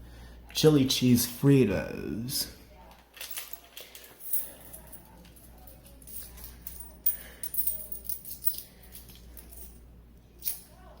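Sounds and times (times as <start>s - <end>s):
metal objects jingling: 3.1s - 10.8s.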